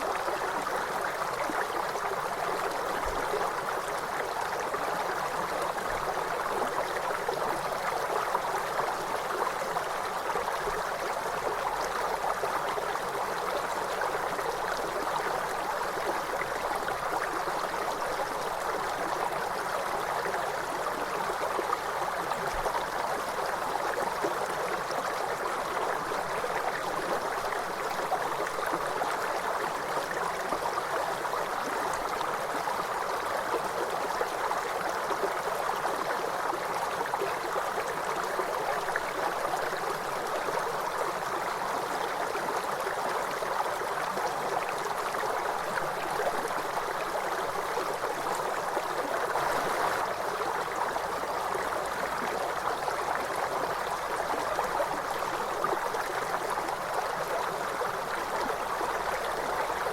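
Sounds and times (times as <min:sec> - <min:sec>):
river water rushing: 0:46.4 - 0:52.0.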